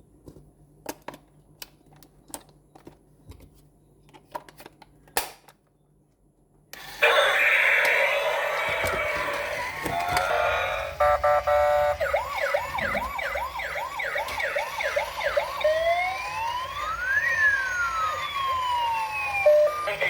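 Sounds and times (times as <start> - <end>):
toy electronic siren: 6.8 - 20.0.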